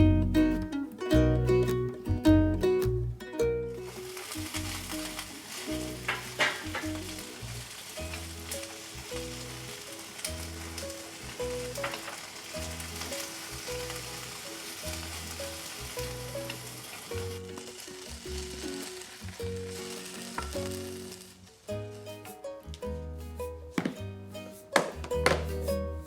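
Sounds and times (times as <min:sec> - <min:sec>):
light background music: 0:00.0 - 0:26.0
utensil scraping and clinking: 0:03.8 - 0:21.4
food sizzling in a pan: 0:03.8 - 0:22.4.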